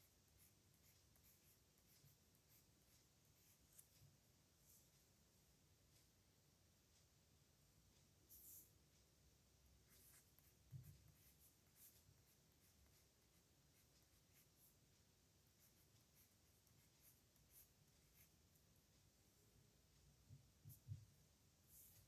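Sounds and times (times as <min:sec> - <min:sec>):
pen scratching on paper: 0:00.3 - 0:04.0, 0:09.9 - 0:14.8, 0:15.5 - 0:18.4, 0:21.7 - 0:22.0.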